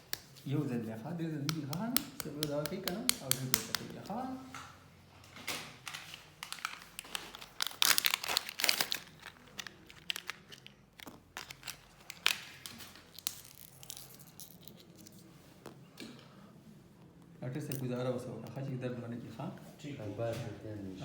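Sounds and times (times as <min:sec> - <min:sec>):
wrapping crinkling and tearing: 0:05.9 - 0:15.3.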